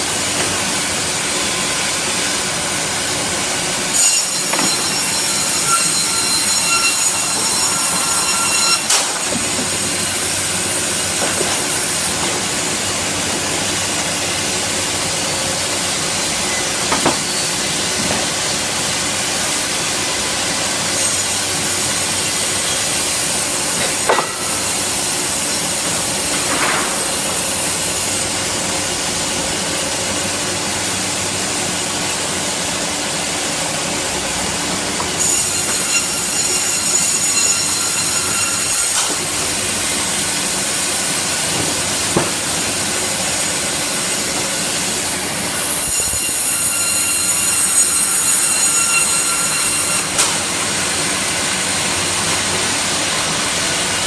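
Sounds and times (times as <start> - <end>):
sawmill machine noise and hiss: 0.0 - 54.0
saw cutting whine: 1.4 - 13.2, 35.2 - 41.5, 43.1 - 50.3.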